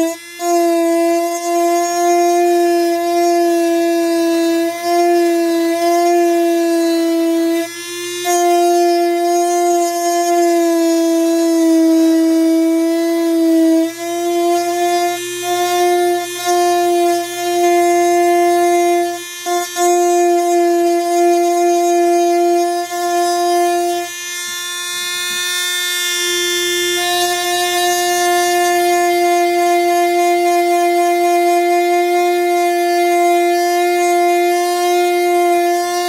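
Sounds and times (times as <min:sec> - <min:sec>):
power tool motor whining: 0:00.0 - 0:36.0.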